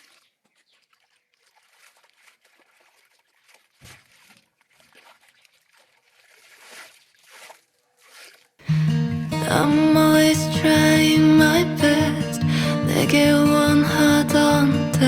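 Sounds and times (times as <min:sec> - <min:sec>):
water sloshing and trickling: 0:00.0 - 0:08.6.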